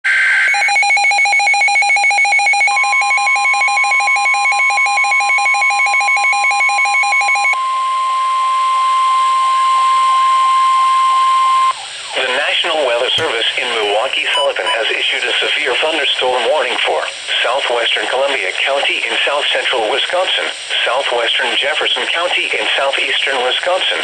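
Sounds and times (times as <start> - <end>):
rapid pulsing electronic beep: 13.8 - 14.9.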